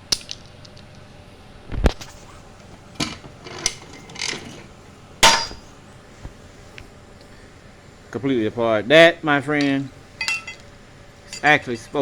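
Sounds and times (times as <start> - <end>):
light metal clinks: 9.6 - 11.9.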